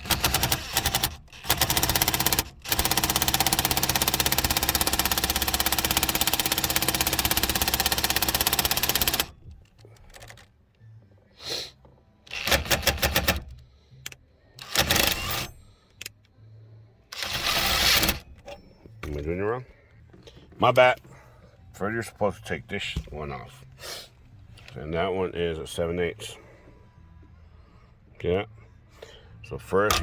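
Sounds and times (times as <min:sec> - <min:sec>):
ratchet clicking: 0:00.0 - 0:09.3, 0:14.6 - 0:16.1, 0:17.2 - 0:18.2.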